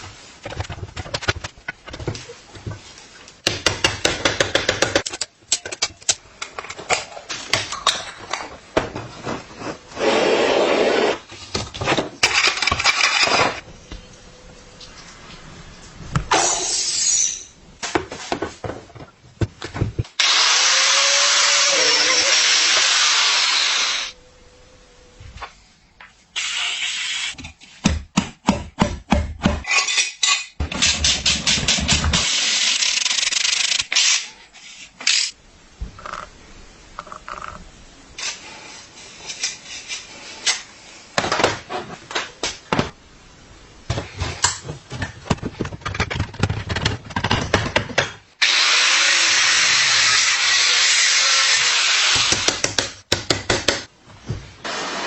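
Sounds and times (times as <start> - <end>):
power tool running: 20.2 - 24.2.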